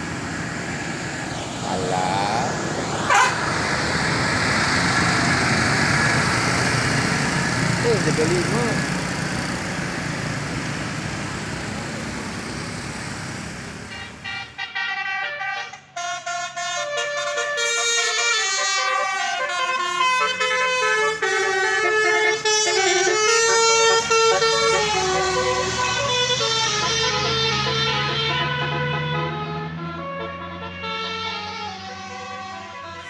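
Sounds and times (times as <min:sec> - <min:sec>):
bus engine: 0:00.0 - 0:33.0
multi-tone bus horn melody: 0:02.4 - 0:03.8, 0:13.9 - 0:33.0.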